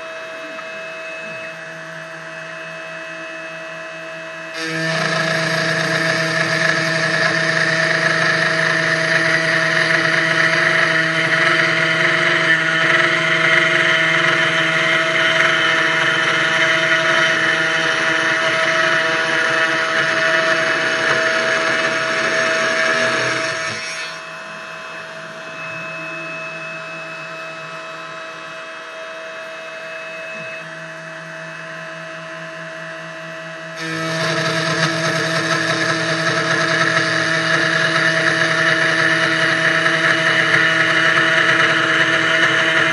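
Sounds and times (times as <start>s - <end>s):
router whine over grinding: 0.0s - 42.9s.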